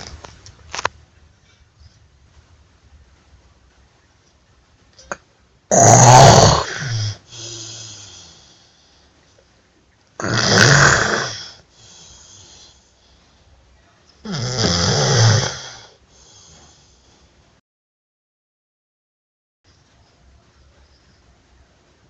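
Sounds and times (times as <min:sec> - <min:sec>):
person snoring: 0:05.7 - 0:08.6, 0:10.2 - 0:12.8, 0:14.3 - 0:16.9
soft breath out: 0:15.9 - 0:17.4.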